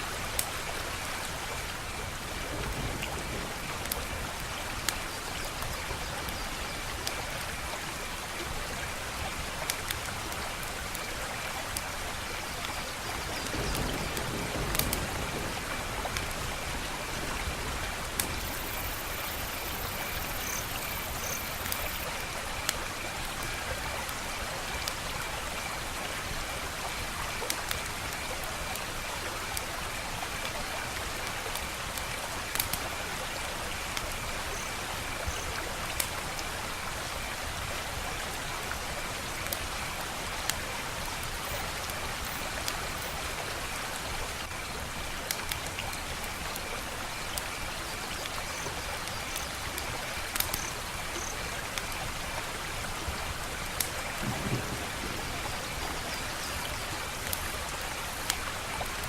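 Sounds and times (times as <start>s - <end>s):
wood fire crackling: 13.4s - 16.7s, 31.3s - 32.8s, 45.1s - 51.2s.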